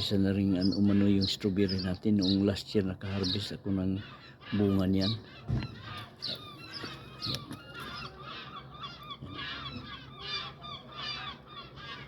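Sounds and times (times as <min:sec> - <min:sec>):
gulls calling: 0:00.0 - 0:12.0.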